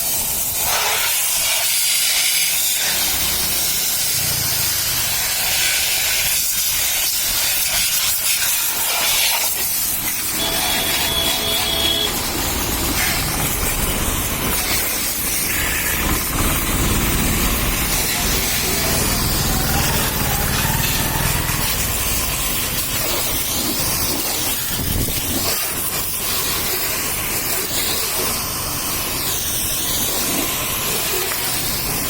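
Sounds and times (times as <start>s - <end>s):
high-pressure jet hissing: 0.0s - 32.0s.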